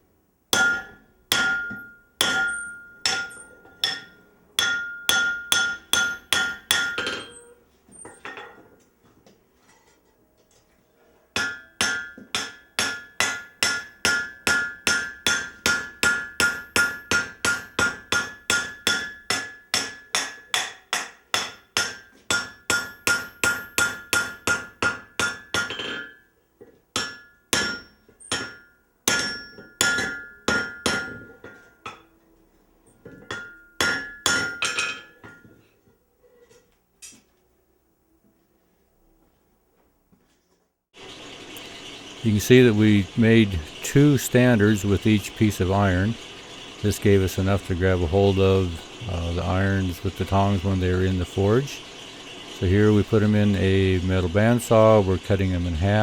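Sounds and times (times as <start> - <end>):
hammer ringing on steel: 0.5 - 7.6, 11.4 - 26.3, 27.0 - 32.0, 33.3 - 35.5.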